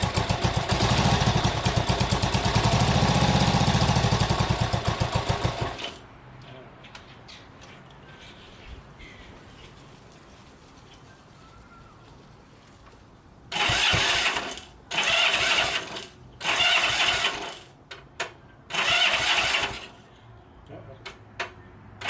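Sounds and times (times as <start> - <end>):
motorcycle engine cranking: 0.0 - 6.1, 13.5 - 20.1.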